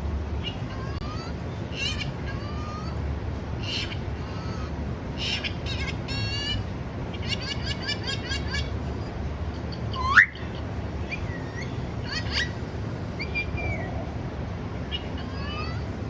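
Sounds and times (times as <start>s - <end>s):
parrot squawking: 0.4s - 3.0s, 3.6s - 8.7s, 9.8s - 12.6s, 13.2s - 14.1s, 14.8s - 16.0s
parrot chirping: 9.8s - 12.6s, 13.2s - 14.1s, 14.8s - 15.9s
parrot whistling: 9.9s - 12.6s, 13.2s - 14.0s.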